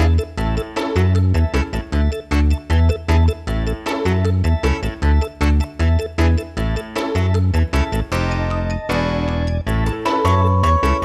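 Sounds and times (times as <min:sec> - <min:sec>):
upbeat instrumental music: 0:00.0 - 0:11.0.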